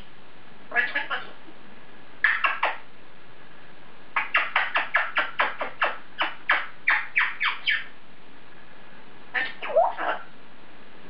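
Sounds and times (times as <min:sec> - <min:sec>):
parrot chirping: 0:00.7 - 0:01.2, 0:02.2 - 0:02.8, 0:04.2 - 0:07.9, 0:09.4 - 0:10.3.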